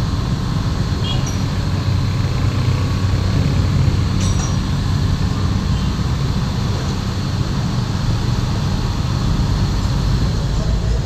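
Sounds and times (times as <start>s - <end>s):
diesel engine rumbling: 0.0s - 11.0s.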